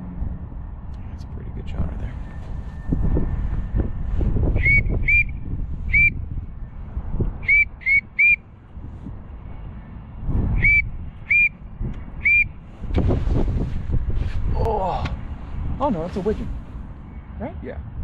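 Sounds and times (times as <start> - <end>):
wind rumble on microphone: 0.0 - 18.0
duck call whistle peeps: 4.6 - 5.3, 5.9 - 6.1, 7.4 - 8.4, 10.6 - 11.6, 12.2 - 12.5.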